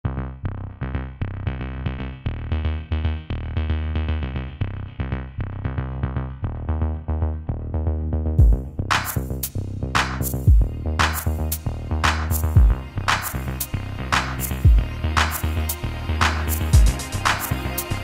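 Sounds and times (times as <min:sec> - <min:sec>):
bass-heavy electronic music: 0:00.0 - 0:18.0
hard drum hits: 0:08.4 - 0:08.6.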